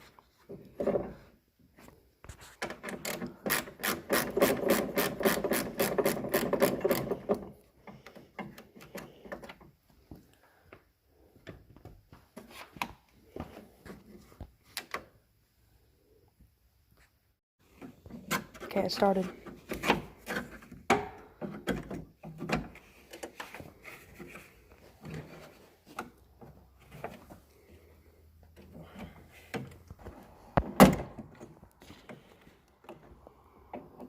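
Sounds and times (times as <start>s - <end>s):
hand ratchet clicking: 3.0s - 7.4s.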